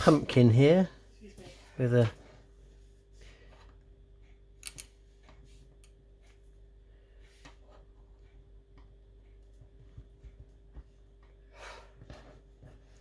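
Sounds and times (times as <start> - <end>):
plastic pieces clicking into place: 4.6 - 4.9.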